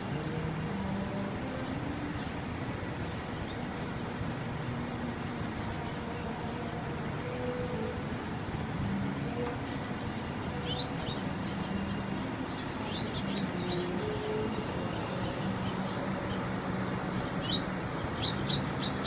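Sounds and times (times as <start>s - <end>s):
small birds chirping: 10.5s - 19.0s.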